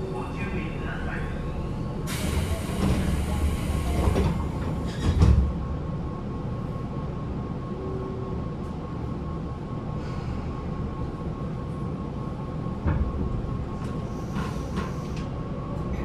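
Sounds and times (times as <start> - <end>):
rush of rail noise: 0.0 - 5.7, 13.6 - 16.0
train running noise: 0.0 - 16.0.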